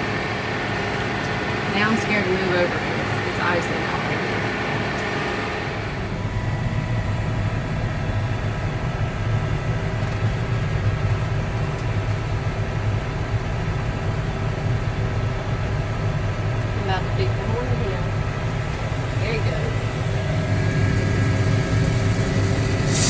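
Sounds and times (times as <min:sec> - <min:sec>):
tractor engine droning: 0:00.0 - 0:23.0
higher hiss: 0:18.4 - 0:23.0.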